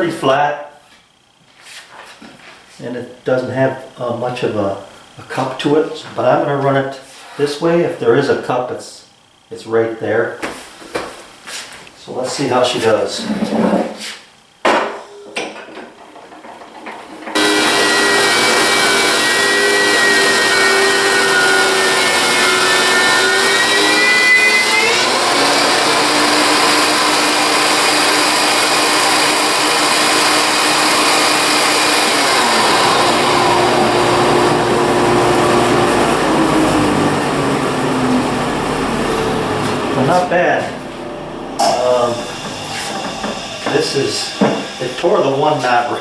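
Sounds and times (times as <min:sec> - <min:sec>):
thickness planer running: 0:16.4 - 0:46.0
knocks: 0:42.4 - 0:43.8, 0:44.4 - 0:44.7.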